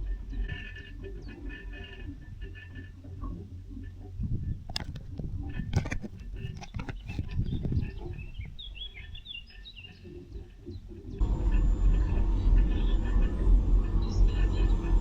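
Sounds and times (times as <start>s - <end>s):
bird chirps: 11.2s - 15.0s
low rumble: 11.2s - 15.0s.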